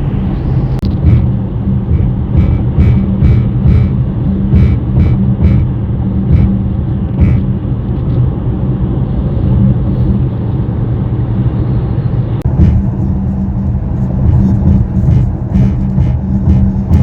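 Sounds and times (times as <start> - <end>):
car cabin road rumble: 0.0 - 17.0
buzzy ticks from dashboard: 0.8 - 7.5, 12.4 - 17.0.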